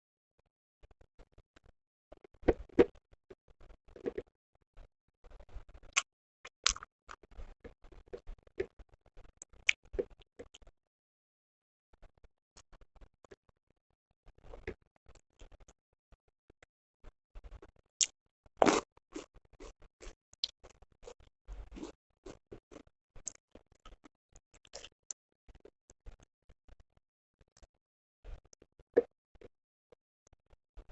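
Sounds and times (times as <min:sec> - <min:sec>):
close chewing and smacking: 0:05.4 - 0:10.7, 0:17.4 - 0:24.0, 0:24.6 - 0:26.8
chewing and lip smacking: 0:06.6 - 0:07.2, 0:18.0 - 0:24.0.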